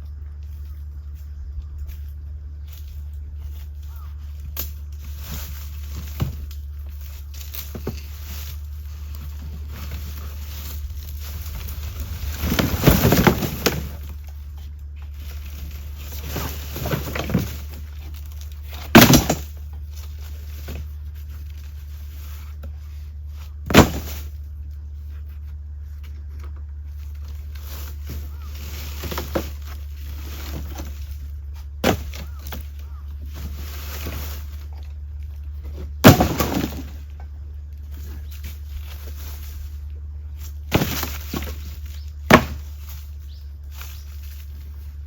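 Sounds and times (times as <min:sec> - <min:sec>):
steady low hum: 0:00.0 - 0:45.0
knocks and thuds: 0:18.8 - 0:19.6, 0:23.6 - 0:24.3, 0:31.8 - 0:32.6, 0:36.0 - 0:37.0, 0:40.7 - 0:42.8.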